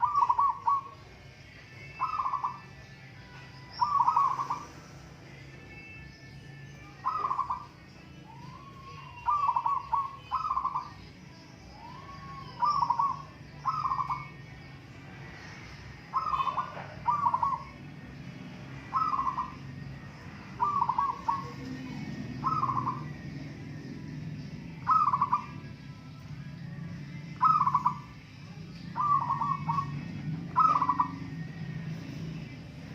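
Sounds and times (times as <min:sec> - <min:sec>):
doves cooing: 0:00.0 - 0:01.1, 0:01.9 - 0:02.8, 0:03.7 - 0:05.0, 0:06.9 - 0:14.4, 0:16.1 - 0:25.8, 0:27.3 - 0:32.9.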